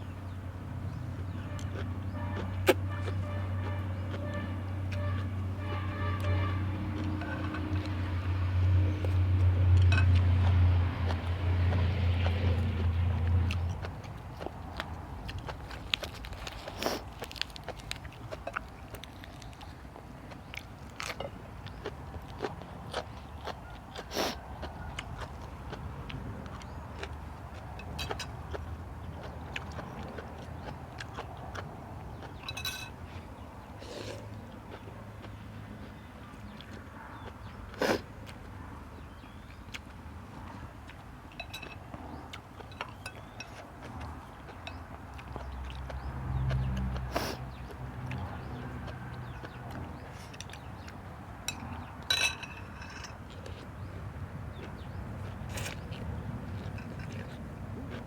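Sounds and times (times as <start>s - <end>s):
person chewing crunchy food: 0.6s - 58.0s
utensils clinking against a bowl: 32.4s - 33.0s, 41.4s - 41.9s, 42.6s - 43.6s, 51.4s - 53.5s.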